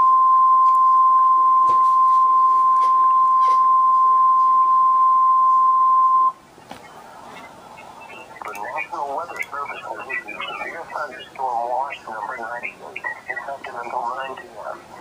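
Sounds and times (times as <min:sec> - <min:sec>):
faint static clicks: 0:06.2 - 0:15.0.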